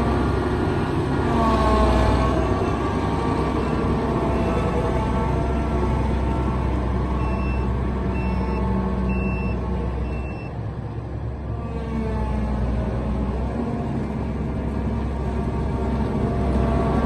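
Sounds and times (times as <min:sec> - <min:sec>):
combine harvester engine rumbling: 0:00.0 - 0:17.0
reversing alarm beeps: 0:07.2 - 0:10.5.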